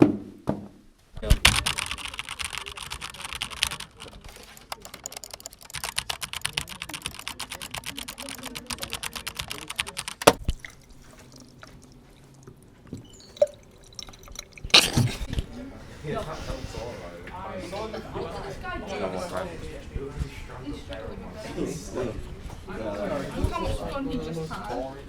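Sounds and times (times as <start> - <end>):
fast irregular clicking: 1.2 - 10.4
sharp knock: 10.2 - 10.4.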